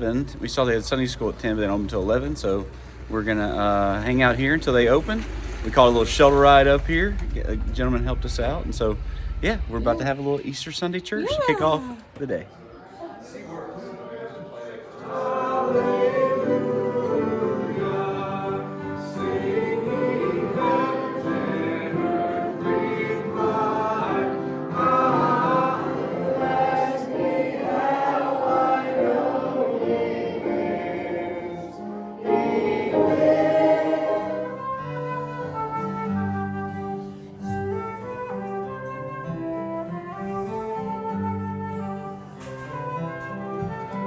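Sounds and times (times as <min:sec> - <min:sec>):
choir singing a hymn: 0:13.8 - 0:37.0.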